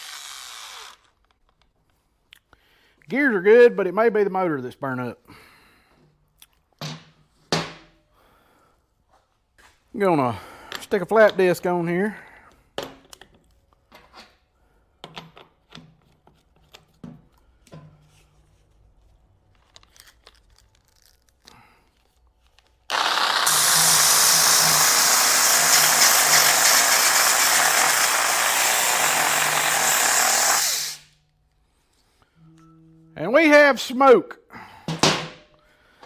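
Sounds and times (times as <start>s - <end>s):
angle grinder motor running: 0.0s - 1.1s, 22.9s - 31.0s.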